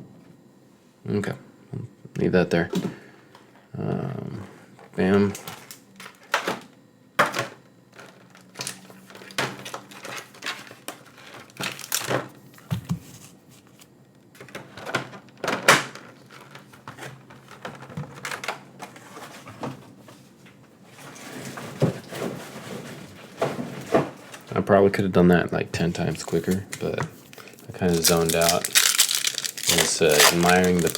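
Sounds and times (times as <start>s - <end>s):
packaging rustling: 8.0s - 12.2s, 26.2s - 30.9s.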